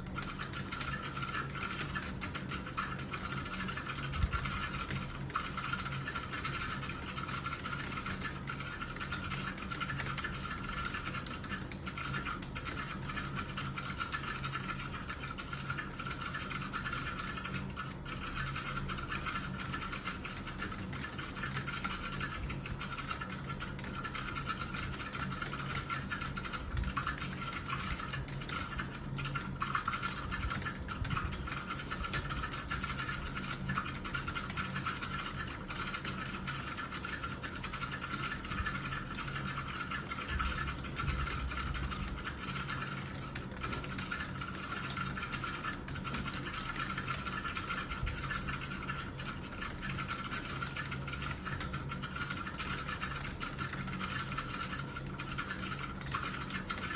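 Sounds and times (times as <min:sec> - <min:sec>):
fast typing on computer keyboard: 0:00.0 - 0:56.9.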